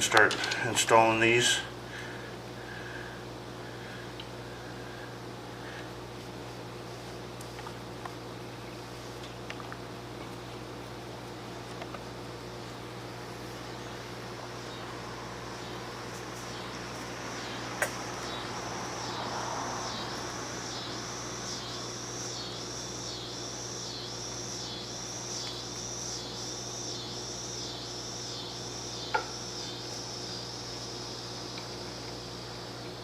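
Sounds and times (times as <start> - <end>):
low steady hum: 0.0 - 33.0
insect chirping: 12.4 - 33.0.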